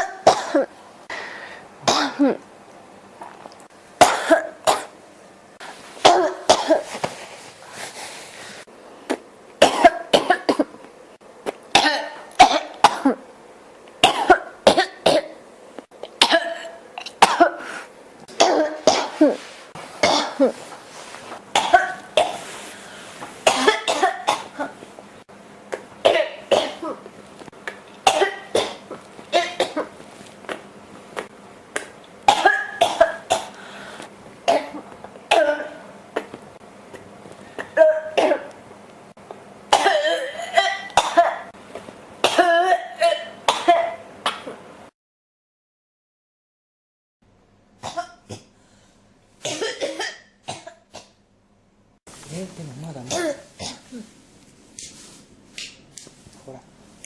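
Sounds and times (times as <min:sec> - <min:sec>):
person coughing: 0:00.0 - 0:00.7, 0:01.8 - 0:02.4, 0:04.0 - 0:05.0, 0:06.0 - 0:07.0, 0:09.1 - 0:10.8, 0:11.8 - 0:13.2, 0:14.0 - 0:15.4, 0:16.2 - 0:17.8, 0:18.4 - 0:19.4, 0:20.0 - 0:20.6, 0:21.6 - 0:22.5, 0:23.5 - 0:24.8, 0:26.0 - 0:27.1, 0:28.0 - 0:29.9, 0:32.3 - 0:33.6, 0:34.5 - 0:36.3, 0:37.6 - 0:38.5, 0:39.7 - 0:41.5, 0:42.2 - 0:44.6, 0:49.4 - 0:51.1, 0:53.0 - 0:54.1.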